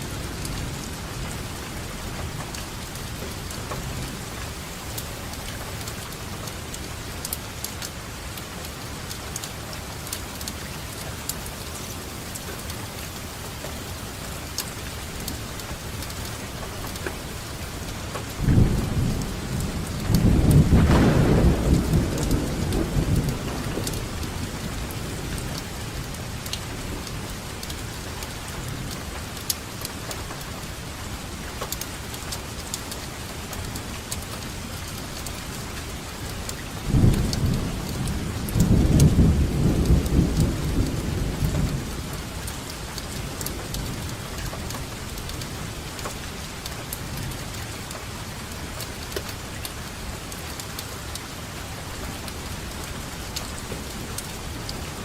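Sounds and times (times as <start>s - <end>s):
steady rainfall: 0.0s - 55.0s
thunder rumbling: 18.4s - 27.1s, 36.8s - 44.2s.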